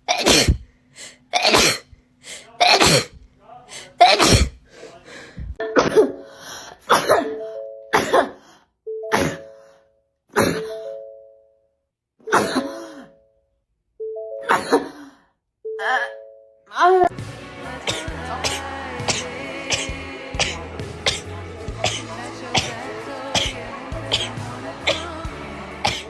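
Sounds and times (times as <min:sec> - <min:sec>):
person sneezing: 0:00.0 - 0:03.2, 0:03.9 - 0:04.6, 0:06.9 - 0:08.4, 0:09.1 - 0:09.5, 0:10.3 - 0:10.9, 0:12.3 - 0:13.1, 0:14.4 - 0:15.1, 0:17.9 - 0:22.7, 0:23.3 - 0:25.1.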